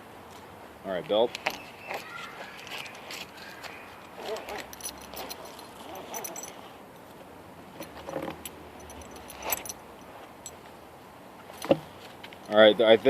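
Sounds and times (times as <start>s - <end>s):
metal buckles jingling and clicking: 4.0s - 10.7s, 11.4s - 12.7s.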